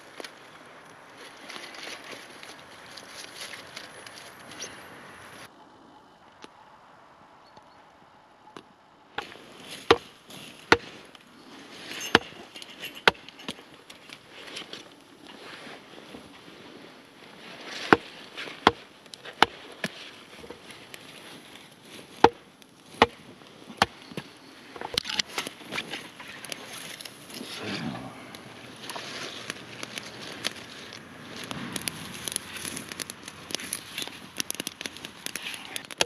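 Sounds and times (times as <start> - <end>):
sharp chopping strikes: 9.8 - 10.1.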